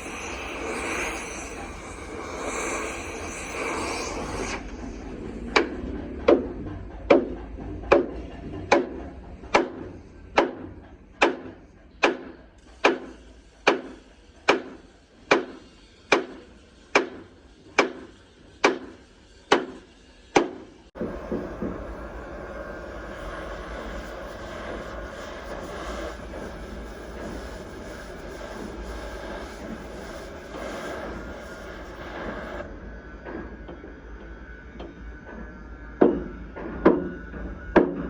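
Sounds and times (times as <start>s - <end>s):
hammer striking: 18.6s - 19.8s.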